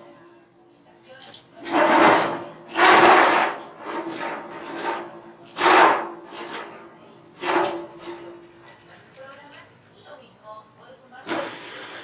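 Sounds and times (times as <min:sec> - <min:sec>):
file scraping metal: 0:01.5 - 0:08.8.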